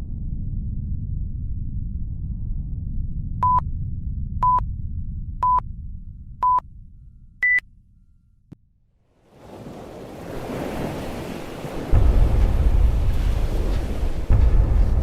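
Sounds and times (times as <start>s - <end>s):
low rumble: 0.0s - 8.3s, 11.8s - 15.0s
electronic countdown beeps: 3.4s - 3.6s, 4.4s - 4.6s, 5.4s - 5.6s, 6.4s - 6.6s, 7.4s - 7.6s.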